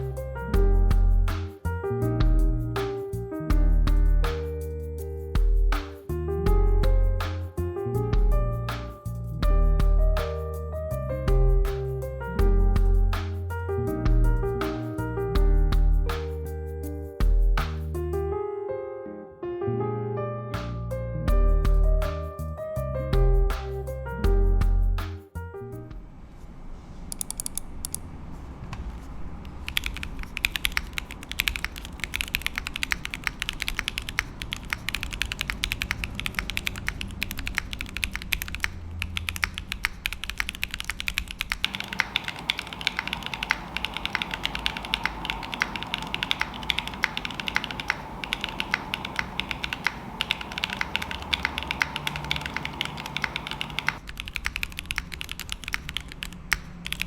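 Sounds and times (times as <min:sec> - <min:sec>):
mechanical keyboard typing: 0:29.5 - 0:57.0.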